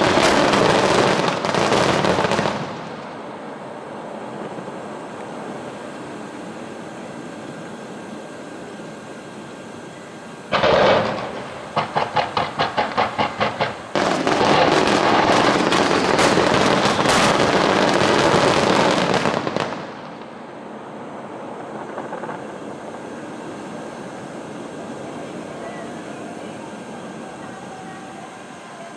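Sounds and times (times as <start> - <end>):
firework pops: 0.0 - 3.2, 10.5 - 20.4
loud firework burst: 0.0 - 6.3, 10.4 - 28.3
background murmur: 0.0 - 28.9
firework crackling: 0.0 - 28.9.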